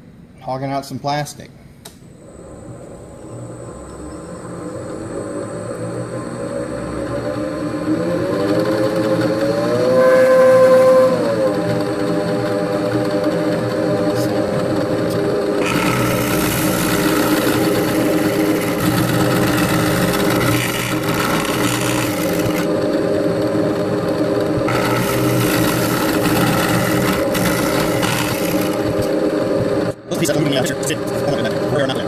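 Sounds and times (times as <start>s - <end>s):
milling machine motor hum: 2.0s - 32.0s
cutter rasping plastic: 15.6s - 22.8s, 24.7s - 29.2s.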